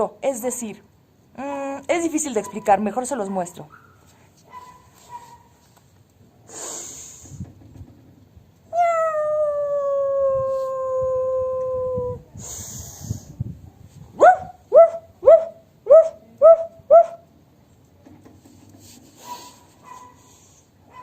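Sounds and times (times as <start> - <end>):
person hissing: 6.5 - 7.4, 12.4 - 13.4
person howling like a wolf: 8.7 - 12.2.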